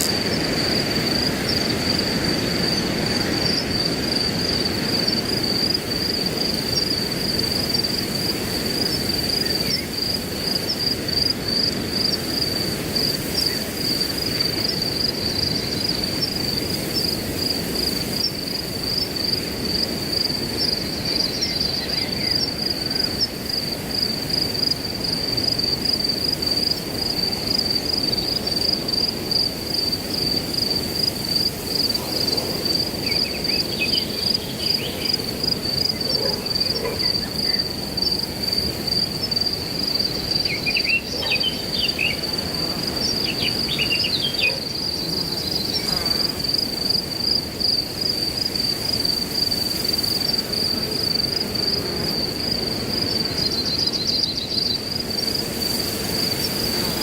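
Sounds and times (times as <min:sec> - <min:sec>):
crickets chirping: 0:00.0 - 0:57.0.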